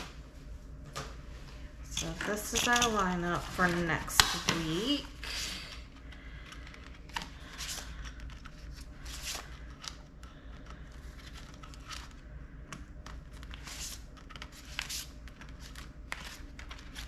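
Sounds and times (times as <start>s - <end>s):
paper rustling: 6.4s - 12.3s, 13.1s - 17.0s.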